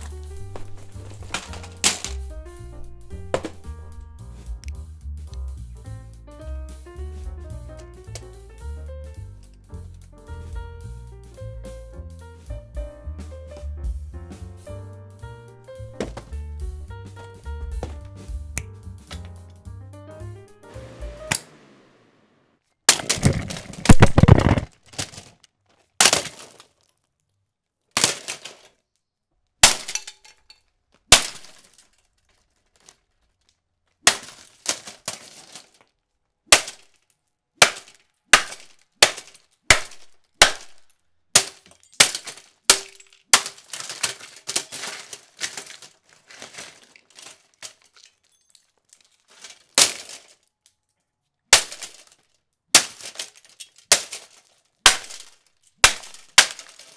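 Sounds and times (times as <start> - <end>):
pieces rattling: 0.0 - 4.0, 22.9 - 27.1, 27.9 - 28.9, 29.7 - 30.7, 31.3 - 36.0, 37.8 - 51.0, 51.6 - 56.9
plastic cracking: 0.0 - 4.0, 7.8 - 8.5, 22.9 - 56.9.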